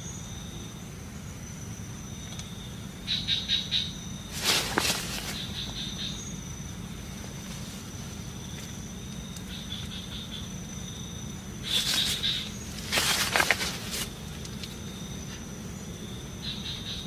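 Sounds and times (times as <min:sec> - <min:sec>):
crickets chirping: 0:00.0 - 0:17.0
insects high trill: 0:00.0 - 0:17.0
low steady hum: 0:00.0 - 0:17.0
rustling crunch: 0:04.3 - 0:05.8, 0:11.6 - 0:14.8.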